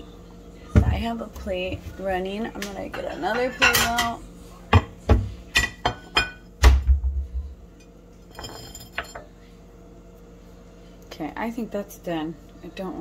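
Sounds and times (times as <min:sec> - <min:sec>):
plates clinking: 0:05.5 - 0:06.4, 0:08.3 - 0:09.3.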